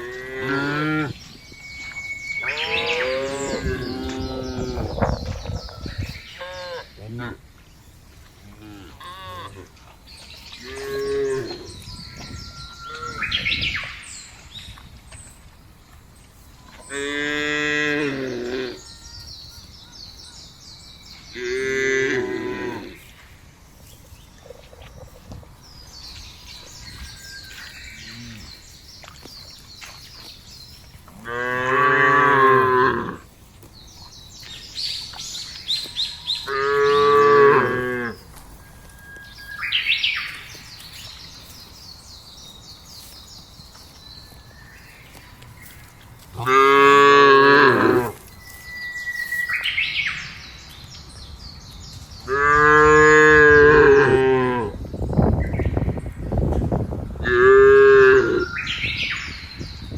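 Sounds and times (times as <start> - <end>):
cows mooing: 0.0 - 1.2, 2.4 - 5.0, 8.5 - 9.7, 31.1 - 33.2, 36.4 - 38.2, 46.4 - 48.2, 52.3 - 54.8
birds chirping: 0.0 - 56.5.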